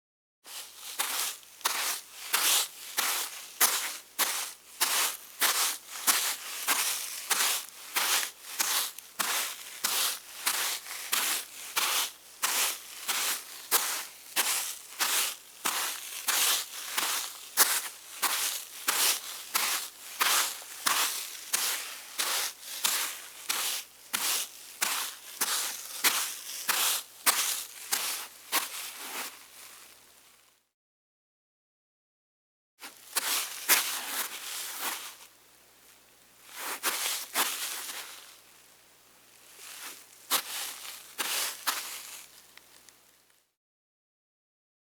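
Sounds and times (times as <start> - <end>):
bare footsteps on wet sand: 0.5 - 28.8, 39.7 - 42.1.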